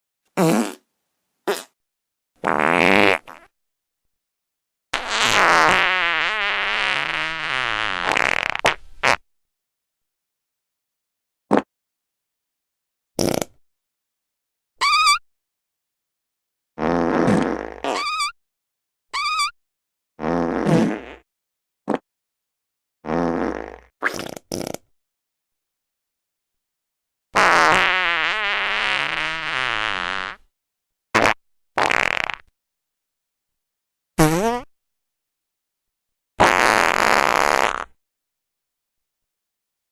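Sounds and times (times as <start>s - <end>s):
farts: 0.4s - 0.9s, 1.5s - 1.8s, 2.4s - 3.5s, 5.0s - 9.2s, 13.2s - 13.6s, 16.8s - 18.4s, 20.2s - 21.2s, 23.0s - 24.9s, 27.4s - 30.4s, 31.2s - 32.5s, 34.2s - 34.7s, 36.4s - 38.0s.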